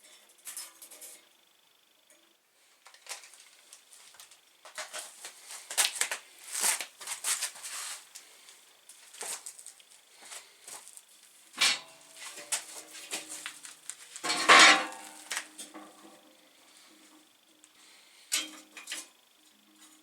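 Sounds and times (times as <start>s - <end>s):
objects being handled clattering: 11.6s - 16.2s.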